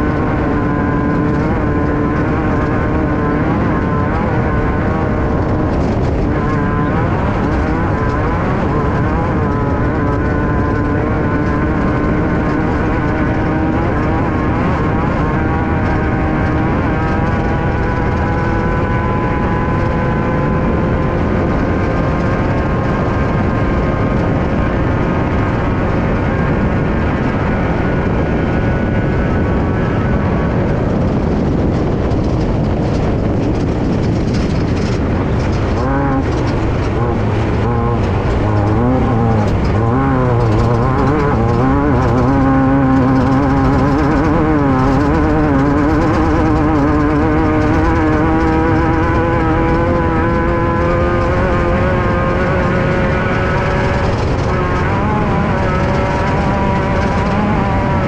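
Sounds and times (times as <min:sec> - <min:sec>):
race car engine revving: 0:00.0 - 0:58.0
wind and tyre noise: 0:00.0 - 0:58.0
knocks and rattles: 0:30.8 - 0:57.8.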